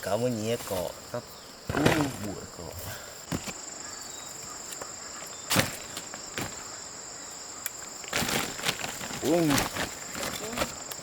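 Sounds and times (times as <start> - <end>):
insects droning: 0.0 - 11.0
rustling scrape: 8.1 - 10.8.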